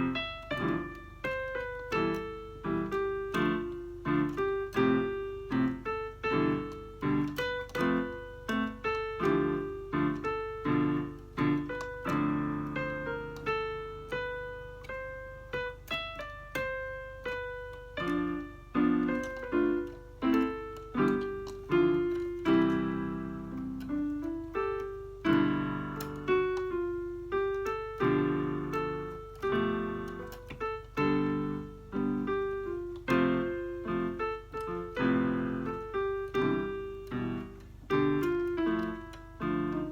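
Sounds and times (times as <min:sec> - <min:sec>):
electronic keyboard piano notes: 0:00.0 - 0:39.9.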